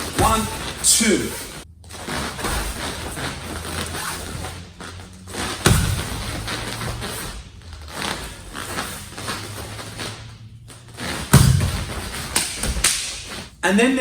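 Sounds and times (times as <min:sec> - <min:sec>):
heavy punch thuds: 0:00.0 - 0:01.6, 0:05.3 - 0:08.3, 0:11.0 - 0:13.4
movement noise: 0:00.0 - 0:14.0.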